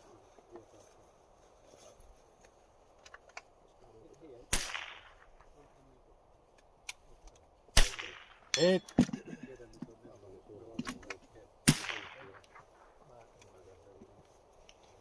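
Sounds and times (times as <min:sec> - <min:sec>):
rifle shots: 0:04.5 - 0:05.5, 0:07.7 - 0:08.5, 0:11.6 - 0:12.7.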